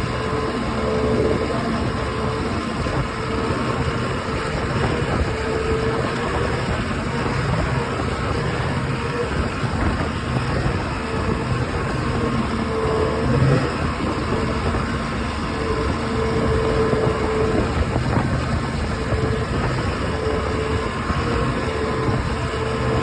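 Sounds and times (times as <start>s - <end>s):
boat engine running: 0.0s - 23.0s
grinding noise: 0.0s - 23.0s
wavering tone: 12.4s - 17.4s.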